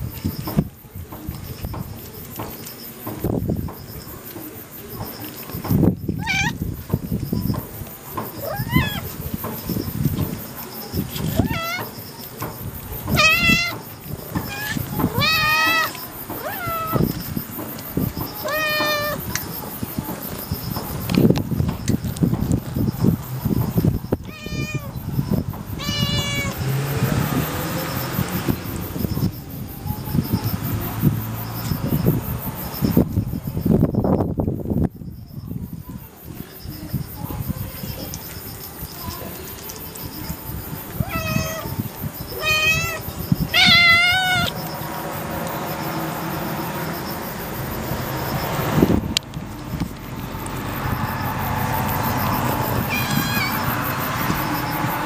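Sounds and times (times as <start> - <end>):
cat meowing: 6.2 - 6.6, 8.4 - 9.1, 11.1 - 11.9, 13.0 - 17.2, 18.4 - 19.3, 24.2 - 25.0, 25.8 - 26.6, 41.0 - 44.6, 52.7 - 53.8.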